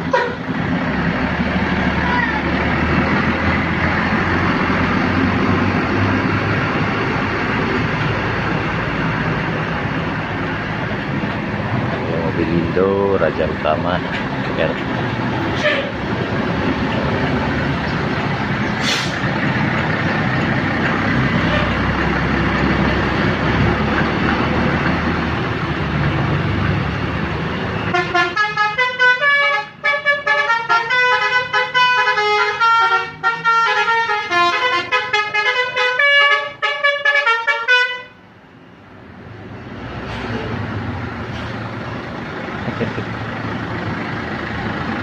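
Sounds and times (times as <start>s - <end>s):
heavy vehicle engine: 0.0s - 45.0s
road noise: 0.0s - 45.0s
bus horn playing fast tune: 0.1s - 0.4s, 27.9s - 38.2s.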